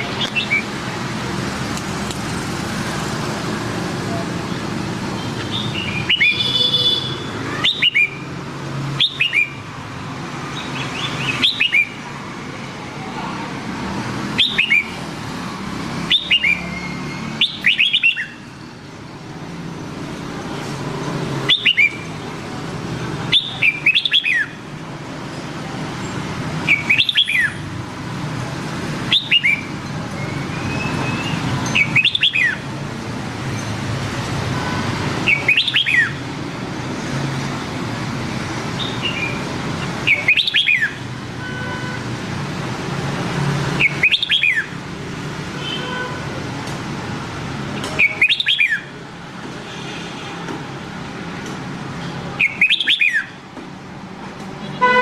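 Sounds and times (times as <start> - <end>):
bird whistled song: 5.4 - 8.2, 9.0 - 9.6, 10.7 - 12.0, 14.4 - 14.9, 16.1 - 18.4, 21.5 - 22.1, 23.3 - 24.6, 26.6 - 27.6, 29.1 - 32.6, 35.3 - 36.2, 40.1 - 41.0, 43.8 - 44.7, 48.0 - 48.9, 52.4 - 53.4.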